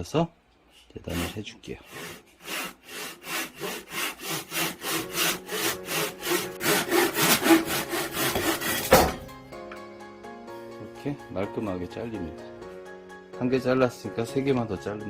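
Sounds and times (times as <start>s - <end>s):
hand saw cutting wood: 1.1s - 9.2s
loud knock: 8.7s - 9.3s.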